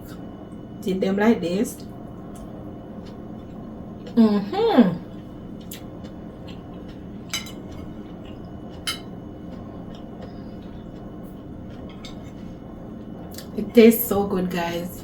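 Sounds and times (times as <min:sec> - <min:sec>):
low room hum: 0:00.0 - 0:15.0
cutlery clinking against plate: 0:07.3 - 0:08.0, 0:08.7 - 0:09.2, 0:11.7 - 0:12.4.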